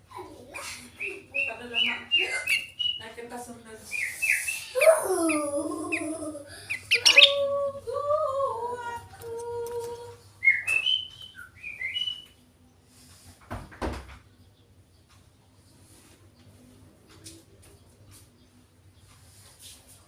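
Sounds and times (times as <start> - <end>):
bird whistling and chirping: 0.6 - 3.0, 3.9 - 7.5, 10.4 - 12.4.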